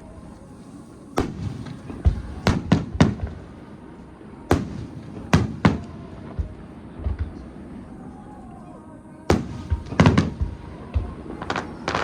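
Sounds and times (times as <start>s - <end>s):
fireworks bangs: 1.1s - 8.1s, 9.3s - 12.0s
deep firework thud: 1.2s - 3.5s, 9.3s - 12.0s.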